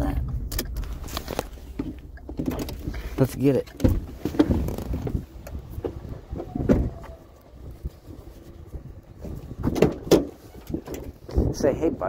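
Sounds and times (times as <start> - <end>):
vehicle rumble: 0.0 - 12.0
knocks and clunks: 0.2 - 7.3, 9.2 - 11.5.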